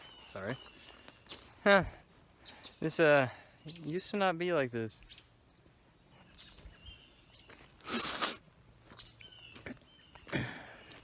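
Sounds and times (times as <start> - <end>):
faint bird chirps: 0.0 - 1.6, 2.4 - 4.1.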